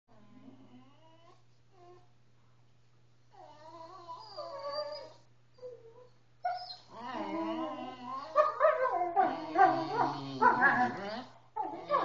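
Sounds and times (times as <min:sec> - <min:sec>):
dogs whining and yipping: 0:03.4 - 0:12.0.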